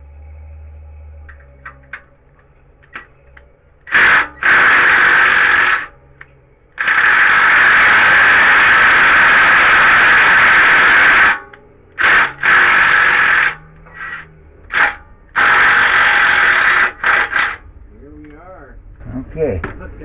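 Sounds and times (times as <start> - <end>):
power tool spinning bolts: 3.9 - 5.9, 6.8 - 17.6.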